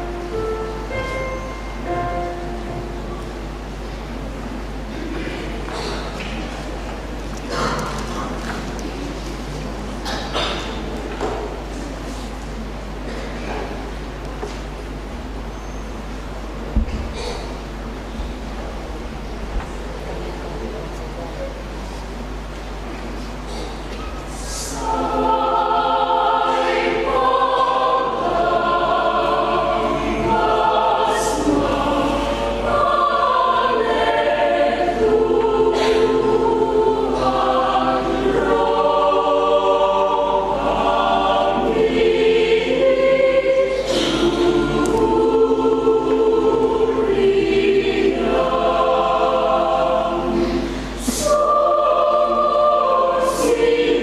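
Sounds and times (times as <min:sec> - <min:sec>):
mixed choir singing a hymn: 0:00.0 - 0:03.4, 0:07.4 - 0:12.0, 0:23.5 - 0:54.0.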